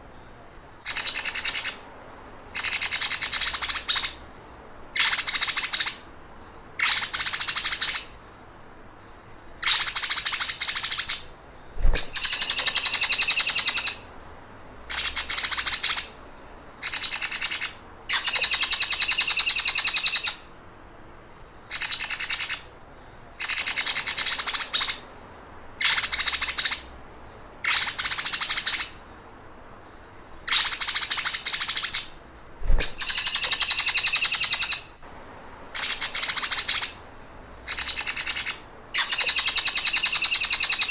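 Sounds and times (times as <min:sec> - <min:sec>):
songbird buzzing trill: 0:09.0 - 0:20.3, 0:29.9 - 0:35.0.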